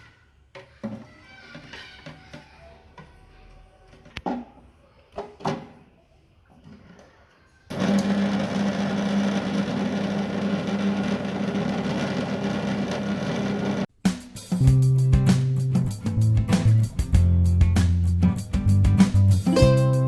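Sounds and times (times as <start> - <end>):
wet grinder motor humming: 7.7 - 13.9.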